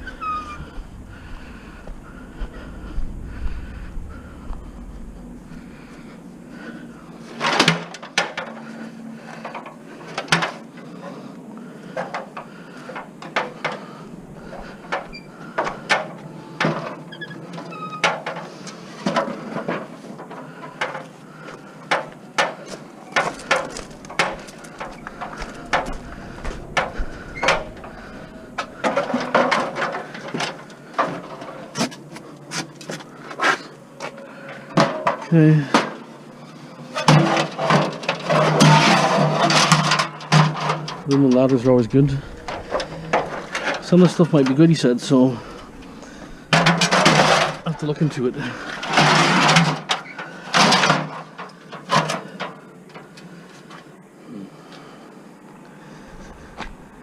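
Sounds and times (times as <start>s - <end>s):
scrap knocking and clattering: 21.9s - 32.0s, 45.5s - 47.9s.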